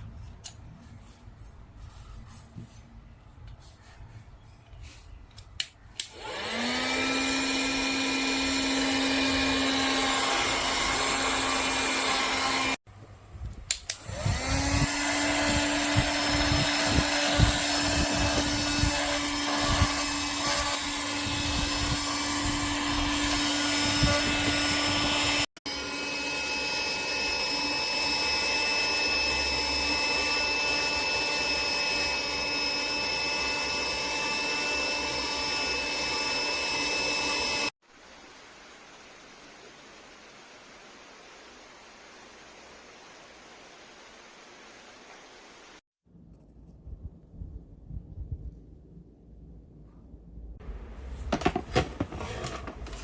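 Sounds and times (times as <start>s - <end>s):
handheld vacuum cleaner whine: 6.0s - 12.8s, 13.9s - 37.8s, 50.6s - 53.0s.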